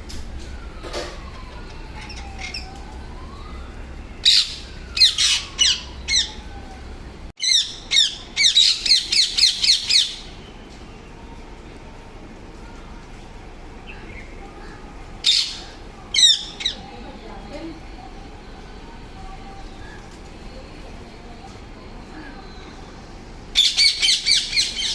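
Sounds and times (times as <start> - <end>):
parrots squawking: 4.2 - 6.5, 7.4 - 10.3, 15.2 - 16.8, 23.6 - 24.9.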